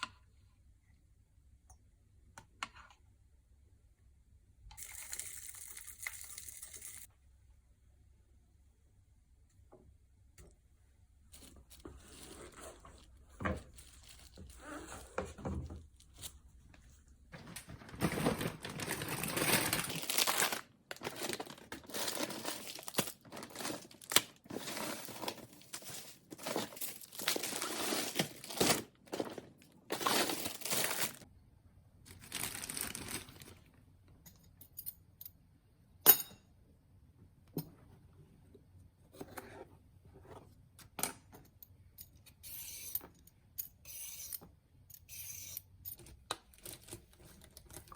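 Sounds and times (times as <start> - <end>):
packaging and bags crinkling: 11.4 - 14.8, 17.4 - 31.2, 32.1 - 33.7, 46.4 - 47.9.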